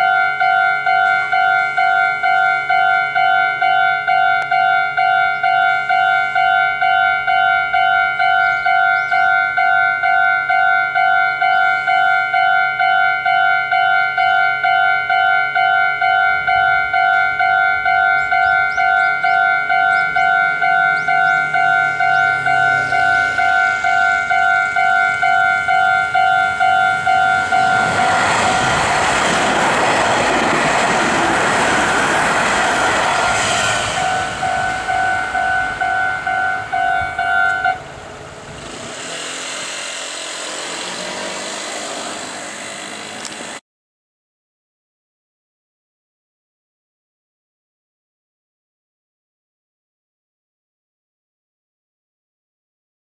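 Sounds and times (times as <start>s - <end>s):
level crossing bell ringing: 0.0s - 28.4s, 34.0s - 37.8s
electric train running noise: 0.0s - 43.6s.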